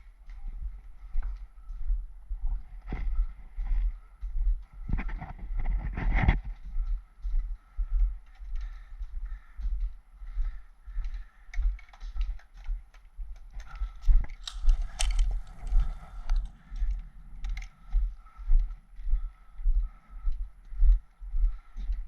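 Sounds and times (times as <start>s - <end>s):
footsteps walking: 0.0s - 22.0s
kit clicking and rattling: 11.0s - 18.8s.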